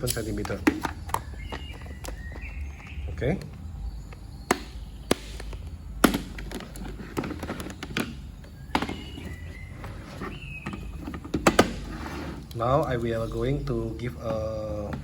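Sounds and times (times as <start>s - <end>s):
plastic toolbox clicks and knocks: 0.1s - 3.0s, 4.4s - 9.4s, 10.6s - 11.9s.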